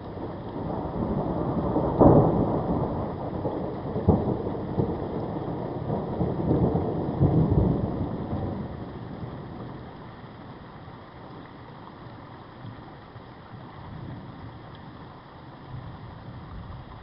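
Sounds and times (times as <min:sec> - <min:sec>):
steady rain: 0:00.0 - 0:17.0
thunder rolling and cracking: 0:00.2 - 0:09.4.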